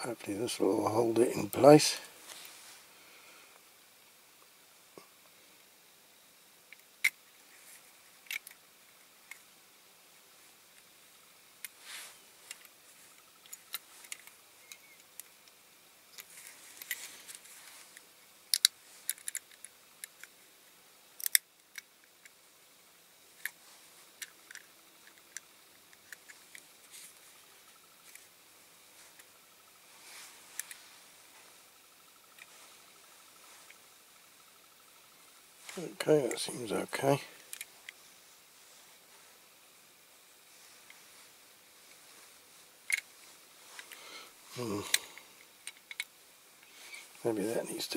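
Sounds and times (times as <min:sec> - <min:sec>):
toy car parts clicking: 0:08.2 - 0:08.6, 0:12.5 - 0:20.4, 0:21.2 - 0:22.4, 0:23.4 - 0:27.1, 0:30.5 - 0:30.8, 0:37.4 - 0:38.0, 0:42.9 - 0:43.1, 0:44.6 - 0:46.7.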